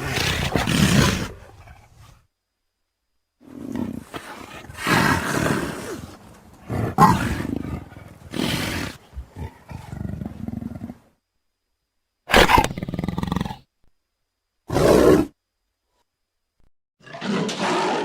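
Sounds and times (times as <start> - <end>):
big cat roars and snarls: 0.0 - 2.2, 3.4 - 11.0, 12.3 - 13.7, 14.7 - 15.4, 17.0 - 18.0.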